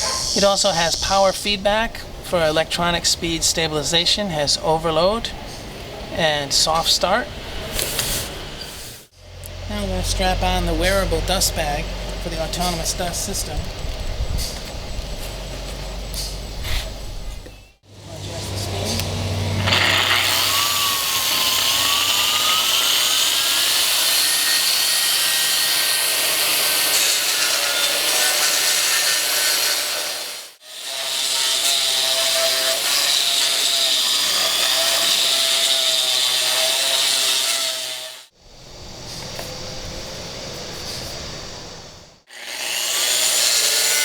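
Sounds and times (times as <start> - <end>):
concrete grinder grinding: 17.8 - 38.2, 42.3 - 44.0.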